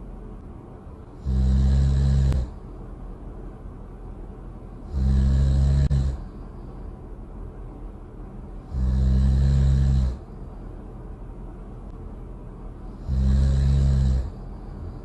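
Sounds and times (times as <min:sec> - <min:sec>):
loud snoring: 0:01.2 - 0:02.6, 0:04.8 - 0:06.2, 0:08.6 - 0:10.3, 0:13.0 - 0:14.4.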